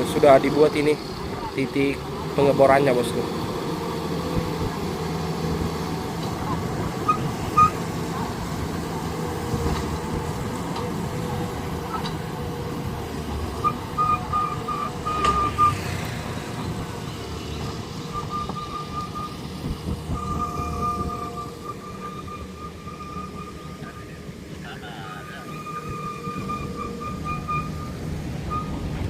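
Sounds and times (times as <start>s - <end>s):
heavy machinery engine rumble: 0.0s - 29.0s
reversing alarm beeping: 13.5s - 16.1s, 16.7s - 24.2s, 25.1s - 28.9s.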